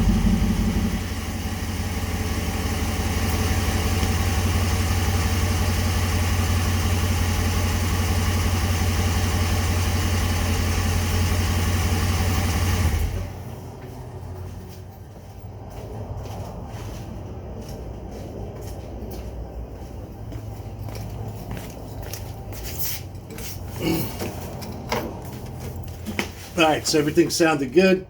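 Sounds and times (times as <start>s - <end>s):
pickup truck engine idling: 0.0s - 13.4s.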